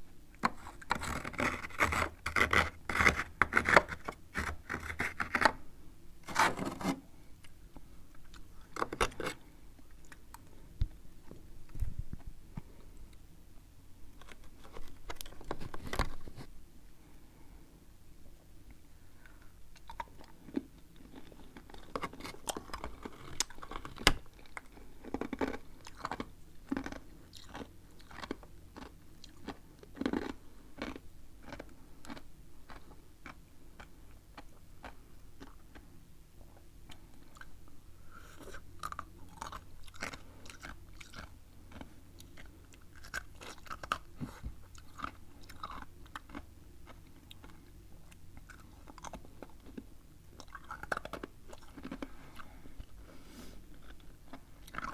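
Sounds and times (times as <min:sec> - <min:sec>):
person crunching ice: 0:00.6 - 0:05.4, 0:06.2 - 0:07.0.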